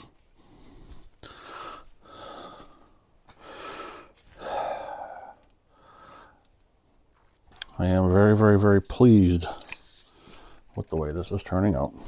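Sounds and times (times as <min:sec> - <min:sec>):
person breathing close: 0:00.0 - 0:06.5, 0:09.4 - 0:10.7.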